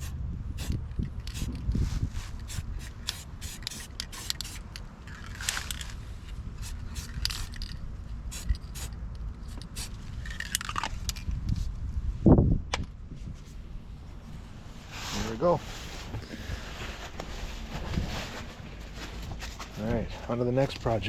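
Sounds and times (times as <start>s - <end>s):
steady low hum: 0.0s - 21.0s
metal clicks and scrapes: 8.4s - 11.3s.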